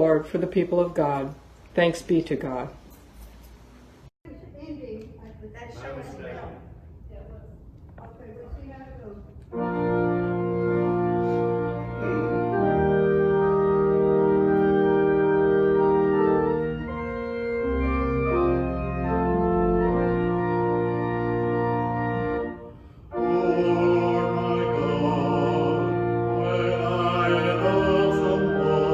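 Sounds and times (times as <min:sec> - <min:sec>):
organ playing held chords: 0:09.5 - 0:28.9.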